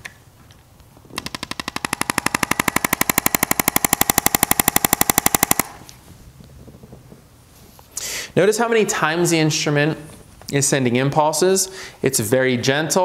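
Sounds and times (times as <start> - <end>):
rapid clicking impulses: 1.1 - 6.0.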